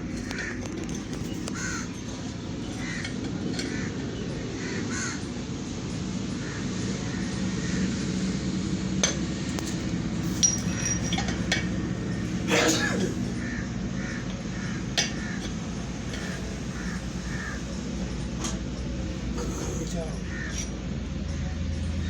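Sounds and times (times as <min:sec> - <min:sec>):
steady low hum: 0:00.0 - 0:22.0
bird calling: 0:11.8 - 0:18.6.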